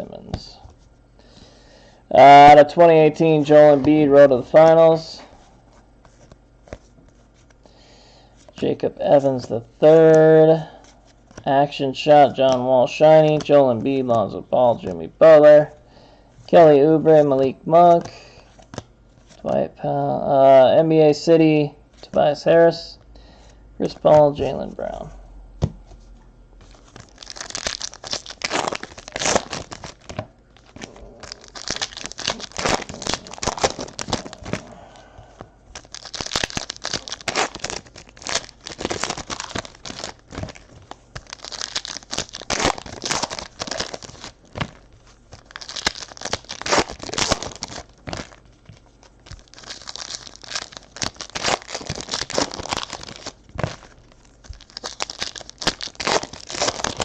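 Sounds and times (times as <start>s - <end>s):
card pack wrappers tearing: 26.7s - 35.0s, 35.7s - 57.0s.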